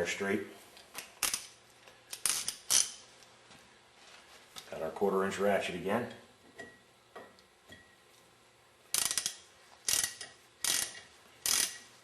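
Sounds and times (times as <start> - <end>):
ratchet clicking: 1.0 - 3.0, 8.9 - 11.9.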